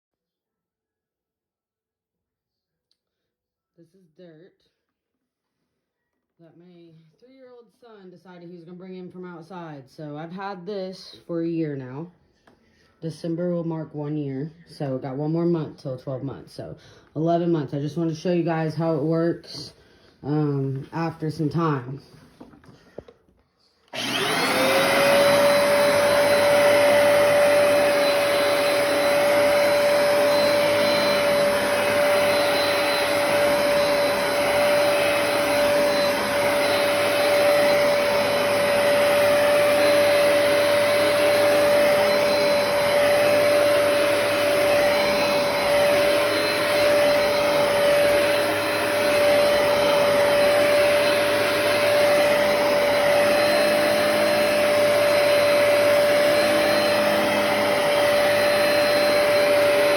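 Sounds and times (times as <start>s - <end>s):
carpet cleaner motor whine: 23.8s - 59.9s
rushing suction: 24.0s - 59.9s.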